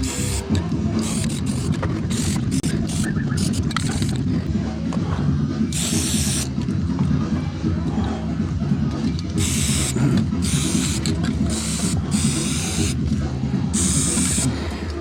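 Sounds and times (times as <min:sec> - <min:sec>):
spray paint can hissing: 0:00.0 - 0:04.2, 0:05.7 - 0:06.6, 0:09.4 - 0:13.0, 0:13.7 - 0:14.5.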